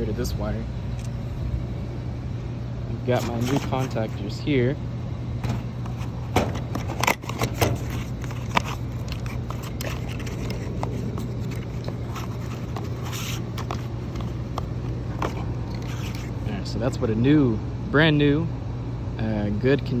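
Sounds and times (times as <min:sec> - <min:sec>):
steady low hum: 0:00.0 - 0:20.0
scraping and crackling: 0:03.1 - 0:04.3, 0:05.4 - 0:16.5
electrical parts being handled: 0:03.1 - 0:04.5, 0:05.4 - 0:16.6.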